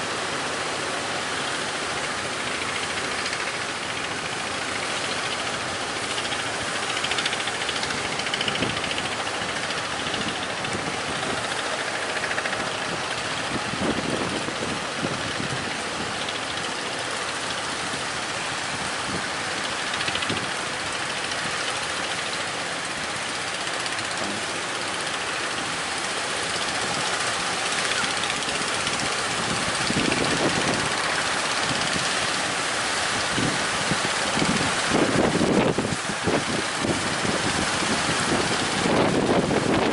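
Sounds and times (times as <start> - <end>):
rough sea water: 0.0 - 39.9
wind buffeting microphone: 2.4 - 24.2, 26.5 - 39.9
strong wind roaring: 6.2 - 17.2, 26.7 - 39.9.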